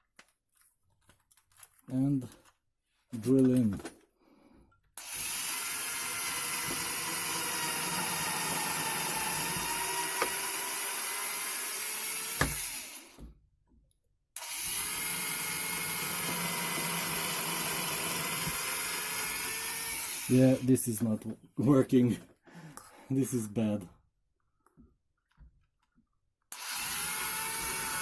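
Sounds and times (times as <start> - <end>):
electric drill into wood: 5.0 - 13.3, 14.4 - 20.7, 26.5 - 28.0.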